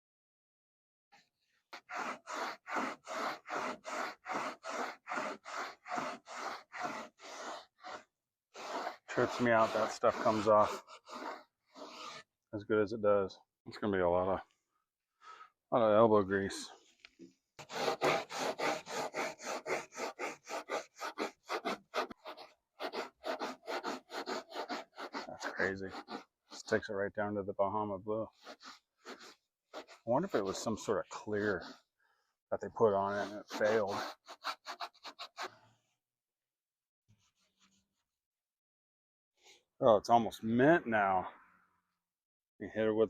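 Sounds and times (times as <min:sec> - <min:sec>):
hand scrubbing car bodywork: 0:01.7 - 0:12.3, 0:17.6 - 0:26.9, 0:28.3 - 0:32.0, 0:32.8 - 0:35.6.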